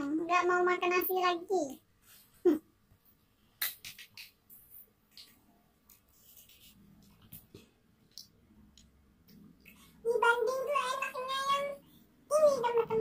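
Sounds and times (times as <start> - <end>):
scratchy rustles: 5.9 - 7.5.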